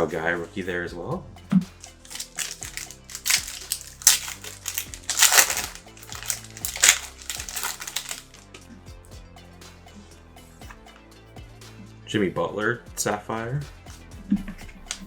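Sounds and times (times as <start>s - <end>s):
background music: 0.0s - 15.0s
plastic wrapper crinkling: 1.8s - 8.4s.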